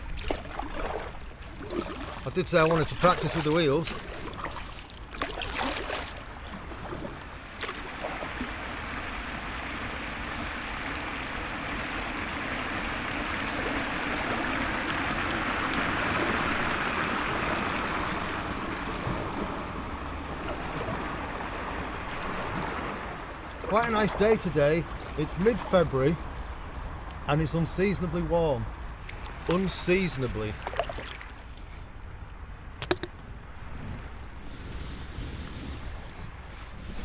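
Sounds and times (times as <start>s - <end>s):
running water rushing: 0.0s - 31.5s.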